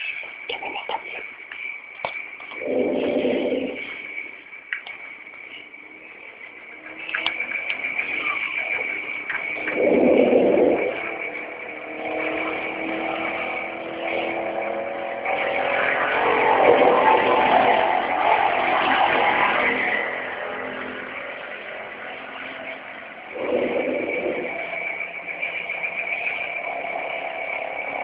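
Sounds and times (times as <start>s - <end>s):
steady high-pitched tone: 0.0s - 28.0s
motor running unevenly: 23.3s - 25.0s.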